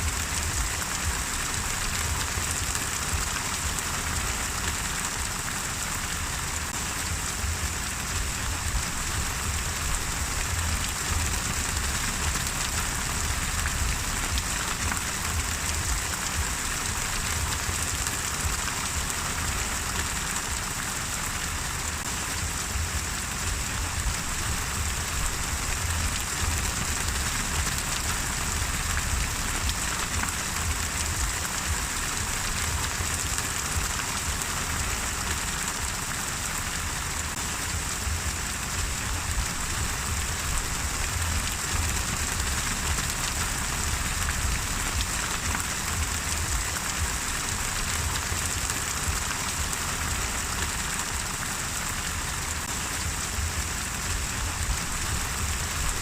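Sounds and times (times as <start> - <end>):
steady rain hiss: 0.0 - 56.0
low rumble: 6.7 - 18.6, 22.3 - 33.4, 37.3 - 49.2.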